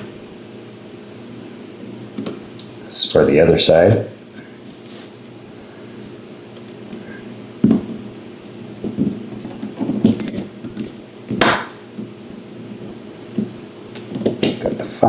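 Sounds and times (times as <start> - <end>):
metal parts clicking and clinking: 10.1 - 11.0
metallic ring: 10.2 - 11.0.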